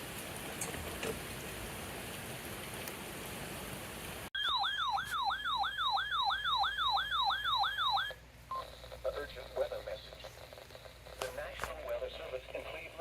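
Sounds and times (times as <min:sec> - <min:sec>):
rain hiss: 0:00.0 - 0:04.3.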